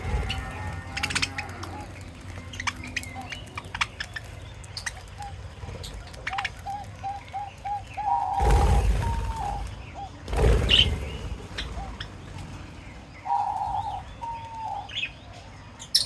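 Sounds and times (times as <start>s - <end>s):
dove cooing: 0.0s - 4.2s, 4.8s - 12.4s, 13.2s - 14.9s
small birds chirping: 0.0s - 16.0s
loud rushing noise: 8.4s - 13.1s.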